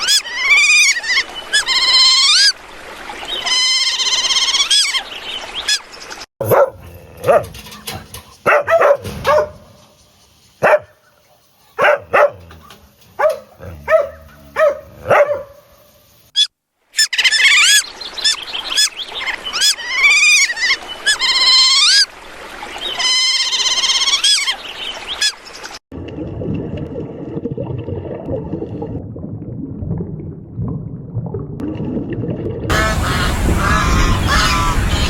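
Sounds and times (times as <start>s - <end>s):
dog barking: 6.4s - 7.5s, 8.4s - 9.7s, 10.6s - 11.0s, 11.8s - 15.7s.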